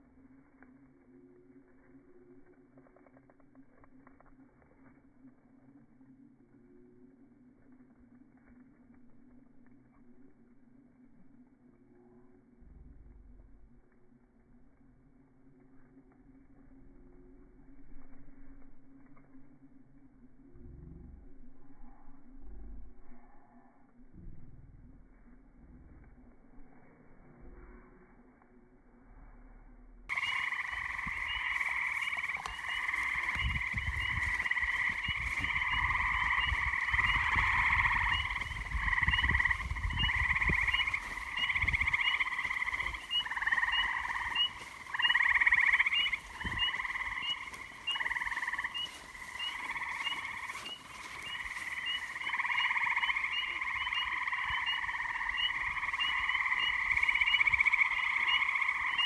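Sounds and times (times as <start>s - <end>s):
low rumbling noise: 16.0s - 59.0s
tree frogs trilling: 30.1s - 59.0s.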